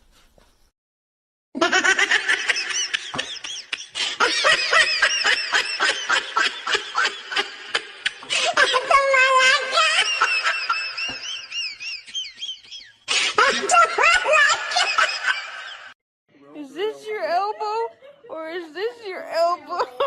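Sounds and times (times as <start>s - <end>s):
high-pitched laughter: 1.6s - 15.9s.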